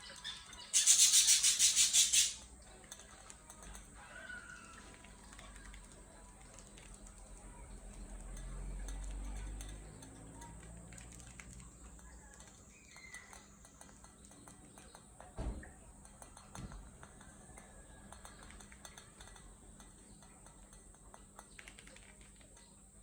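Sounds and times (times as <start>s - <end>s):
budgerigar chirping softly: 0.0s - 2.4s
small clicks and taps: 4.8s - 22.8s.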